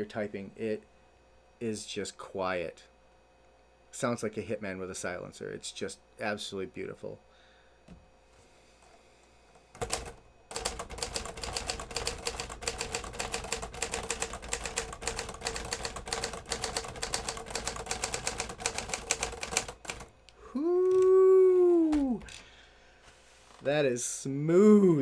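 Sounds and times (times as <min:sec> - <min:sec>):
typewriter keystrokes: 0:09.8 - 0:20.2.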